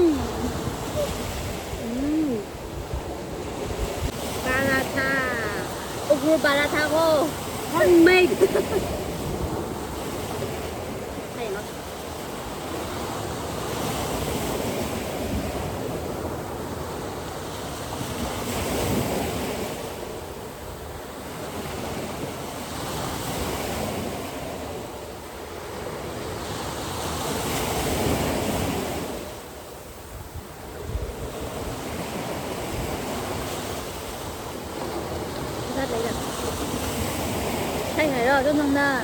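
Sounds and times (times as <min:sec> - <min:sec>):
wind buffeting microphone: 0:00.0 - 0:11.9
ocean surf breaking on beach: 0:00.0 - 0:39.0.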